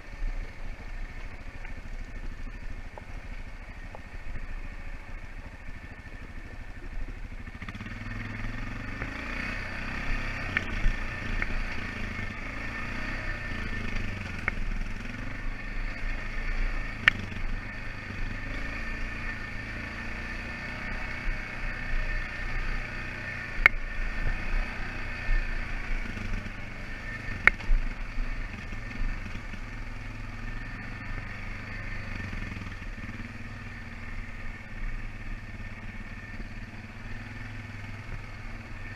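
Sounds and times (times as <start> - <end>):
atv engine running: 0.0 - 38.9.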